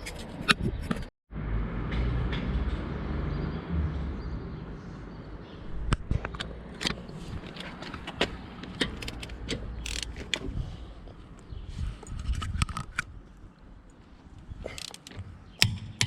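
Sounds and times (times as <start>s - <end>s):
metallic clicks of hand tools: 6.4s - 10.4s, 14.7s - 15.7s
ratchet clicks: 8.7s - 10.4s, 14.7s - 15.1s.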